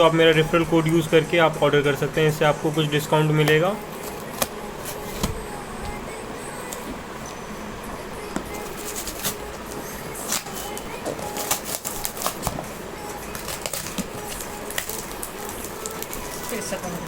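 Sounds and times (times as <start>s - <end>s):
packaging rustling and crackling: 8.4s - 17.0s.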